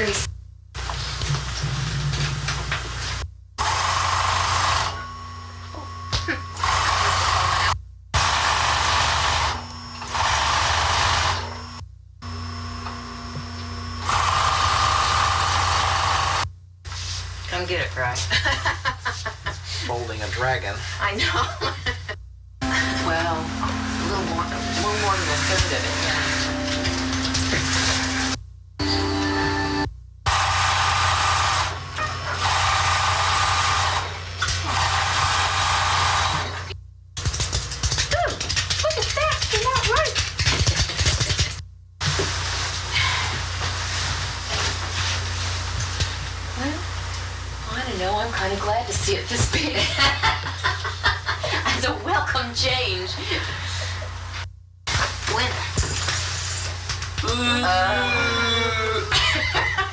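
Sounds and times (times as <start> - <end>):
sewing machine running in bursts: 3.6 - 5.1, 6.5 - 11.8, 14.0 - 16.4, 22.6 - 28.4, 30.3 - 38.0.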